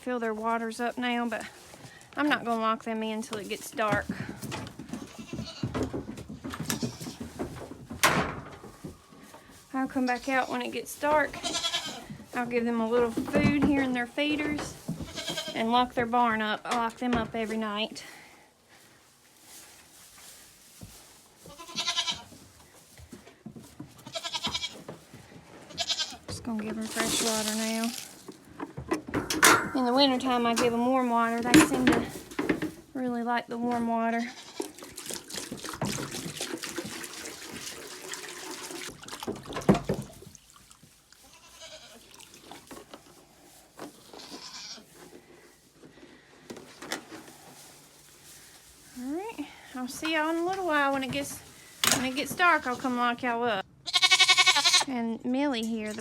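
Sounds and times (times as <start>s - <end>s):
goats bleating: 11.3s - 12.1s, 15.0s - 15.6s, 21.5s - 22.3s, 24.0s - 24.8s, 25.7s - 26.3s, 41.2s - 42.2s, 44.1s - 44.9s, 53.8s - 54.9s
water pouring into container: 34.8s - 39.6s.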